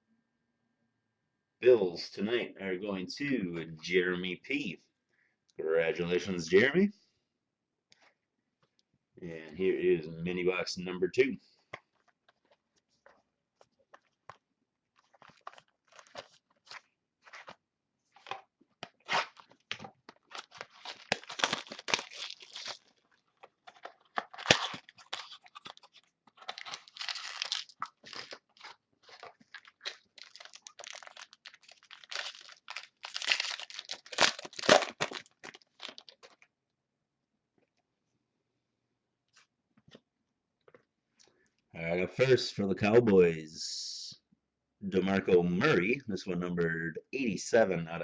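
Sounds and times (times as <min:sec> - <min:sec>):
packaging crinkling and tearing: 0:11.8 - 0:36.5.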